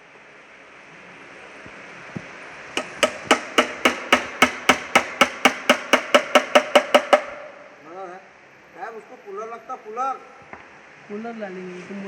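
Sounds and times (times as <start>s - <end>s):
faint knocks: 2.8s - 7.4s
hammer blows on metal: 2.8s - 7.6s.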